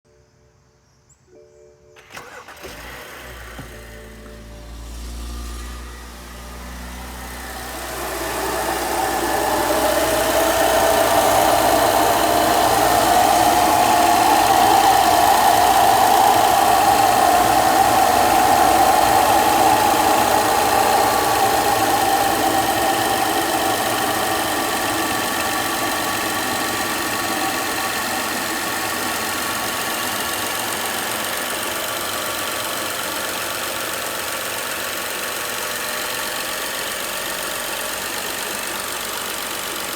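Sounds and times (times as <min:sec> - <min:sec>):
car engine idling: 0:02.2 - 0:39.9
strange howl: 0:08.0 - 0:31.6.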